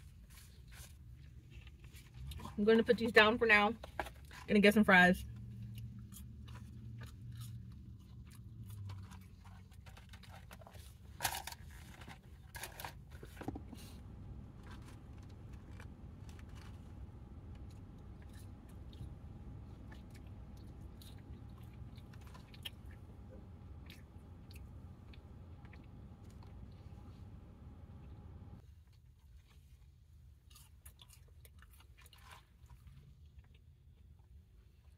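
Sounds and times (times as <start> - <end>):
chewing and crunching fries: 0.0 - 34.9
low hum: 12.6 - 28.6.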